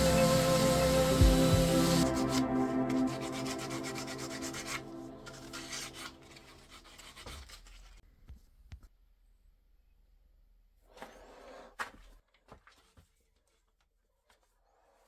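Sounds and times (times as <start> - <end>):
sanding strokes on wood: 0.0 - 6.2
held musical tones: 0.0 - 6.5.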